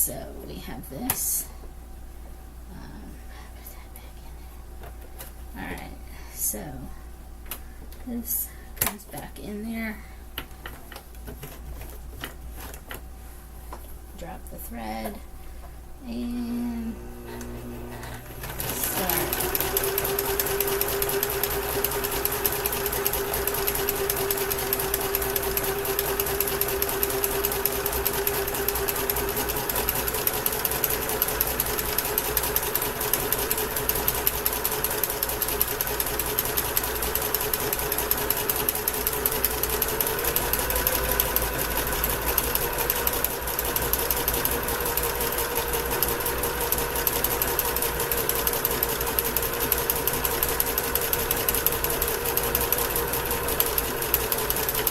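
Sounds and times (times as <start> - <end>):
sewing machine running: 17.2 - 54.9.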